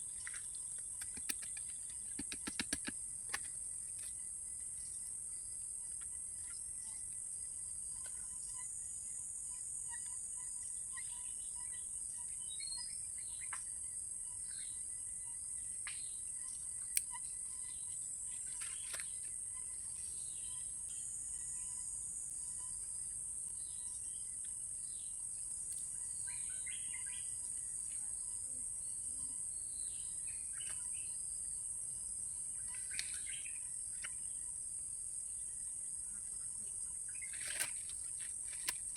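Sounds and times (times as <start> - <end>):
insects droning: 0.0 - 38.9
sharp click: 1.0 - 3.5
bird chirps: 32.6 - 34.5.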